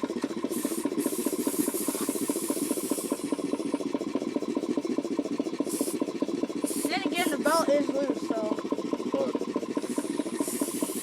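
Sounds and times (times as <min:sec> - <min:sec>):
air compressor chugging: 0:00.0 - 0:11.0
air hissing: 0:00.5 - 0:03.8, 0:05.6 - 0:07.6, 0:09.8 - 0:11.0.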